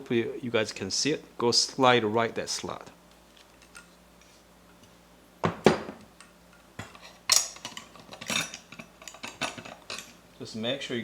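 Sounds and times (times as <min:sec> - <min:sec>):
metal parts clinking: 0:07.3 - 0:10.1.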